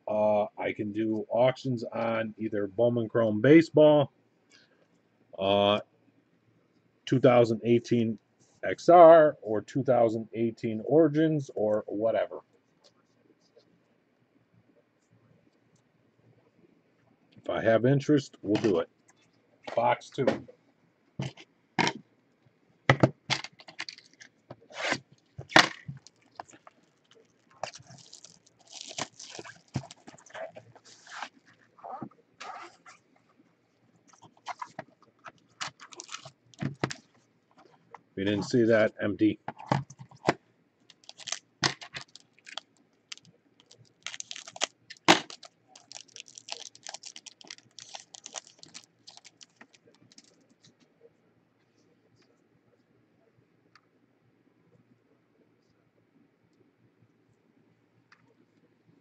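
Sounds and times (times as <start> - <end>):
packaging rustling and tearing: 23.5 - 33.0, 34.1 - 37.1, 40.9 - 50.4.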